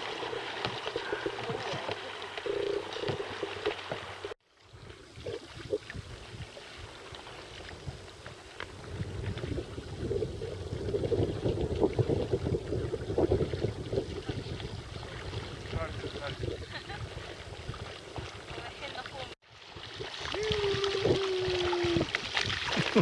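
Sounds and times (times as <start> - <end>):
water splashing from paddling: 0.0 - 10.0, 10.7 - 23.0.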